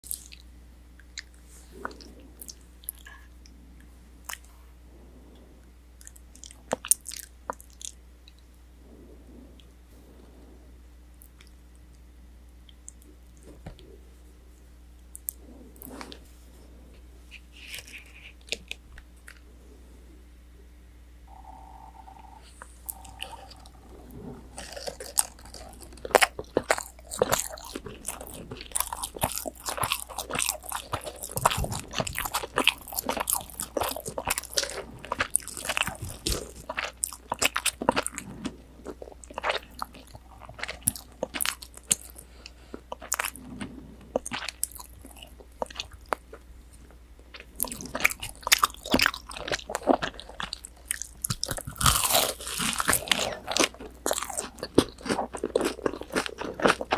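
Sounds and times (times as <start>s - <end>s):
biting and chewing crunchy food: 0.0s - 3.5s, 21.3s - 56.9s.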